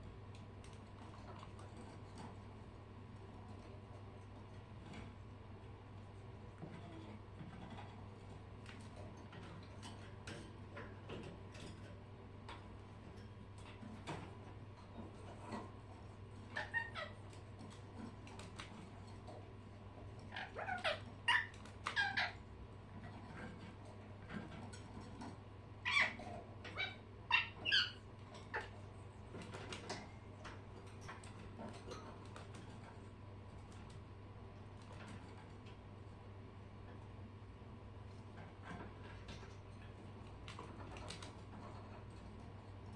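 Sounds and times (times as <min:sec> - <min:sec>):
steady low hum: 0:00.0 - 0:42.9
pet birds chirping: 0:16.3 - 0:19.2, 0:20.1 - 0:22.4, 0:25.8 - 0:30.6.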